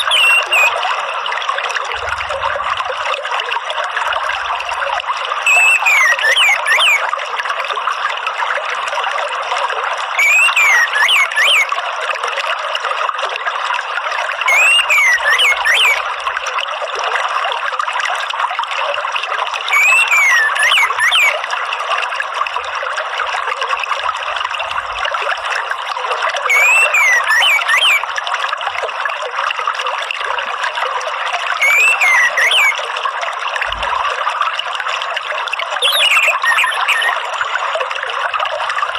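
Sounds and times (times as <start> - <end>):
bird whistled phrase: 0.0 - 0.8, 5.5 - 7.1, 10.2 - 11.7, 14.5 - 16.0, 19.7 - 21.4, 26.5 - 28.0, 31.6 - 32.8, 35.8 - 37.2
running water: 0.0 - 38.9.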